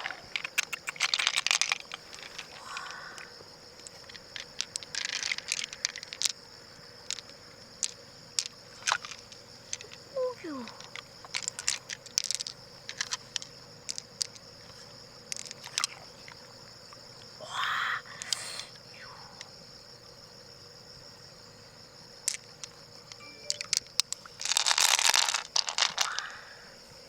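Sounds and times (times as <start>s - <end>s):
high-pitched insect trill: 0.0s - 27.0s
sharp clicks: 0.4s - 1.5s.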